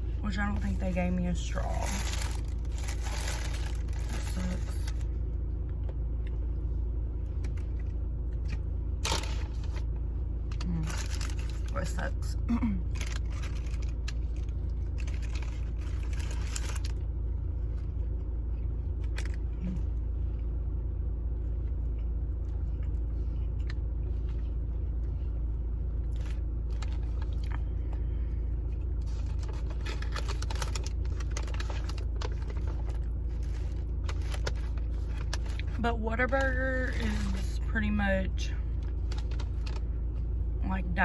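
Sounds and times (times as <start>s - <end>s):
steady low hum: 0.0s - 41.0s
food packaging crackles: 1.4s - 5.1s, 8.4s - 12.0s, 12.9s - 17.1s, 26.0s - 27.6s, 28.9s - 35.8s, 38.8s - 40.2s.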